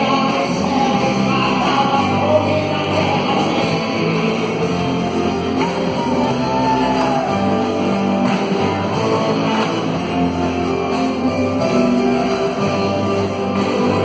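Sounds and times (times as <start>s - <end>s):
guitar band music: 0.0s - 14.0s.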